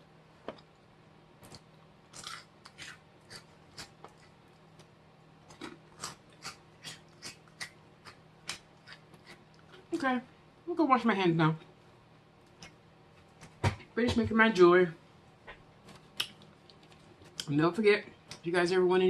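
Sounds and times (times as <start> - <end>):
chewing crunchy chips: 1.4 - 10.1.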